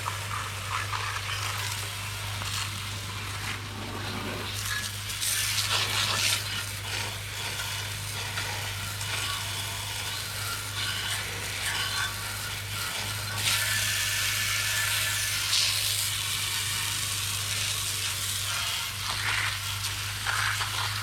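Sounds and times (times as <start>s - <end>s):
hose spray hissing on metal: 4.4s - 21.0s.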